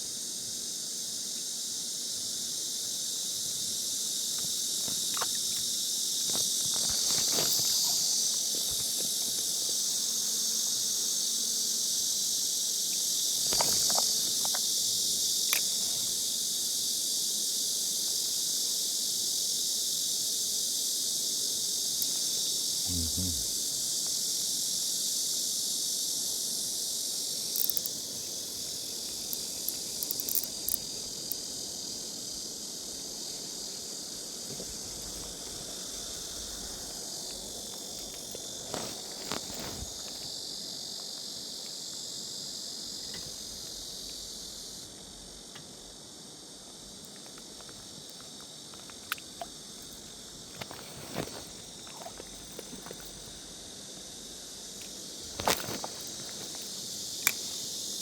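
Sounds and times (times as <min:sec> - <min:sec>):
insects shrilling chorus: 0:21.7 - 0:24.0.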